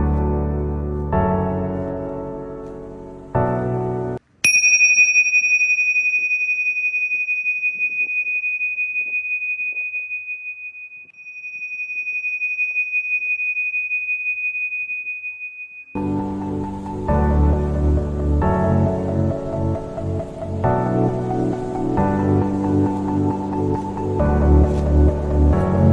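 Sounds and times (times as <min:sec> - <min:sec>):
soft music: 0:00.0 - 0:09.8, 0:16.0 - 0:25.9
tingsha cymbals ringing: 0:04.4 - 0:16.5.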